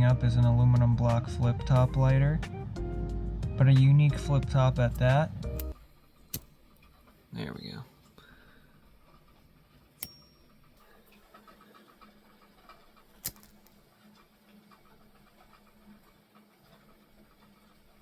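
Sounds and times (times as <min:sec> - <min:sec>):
faint steady ticking: 0:00.0 - 0:18.0
lighter lid snapping: 0:05.0 - 0:06.6, 0:13.2 - 0:13.7.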